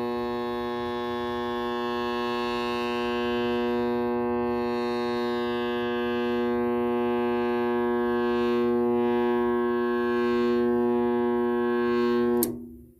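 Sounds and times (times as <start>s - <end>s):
blower motor electrical buzz: 0.0s - 12.8s.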